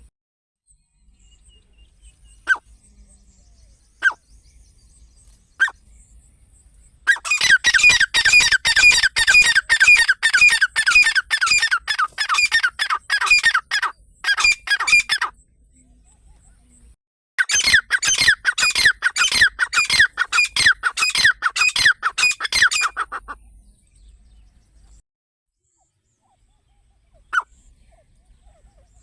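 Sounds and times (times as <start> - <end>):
partridge calling: 2.4 - 2.6, 4.0 - 4.2, 5.6 - 5.8, 7.0 - 15.4, 17.4 - 23.5, 27.1 - 29.0.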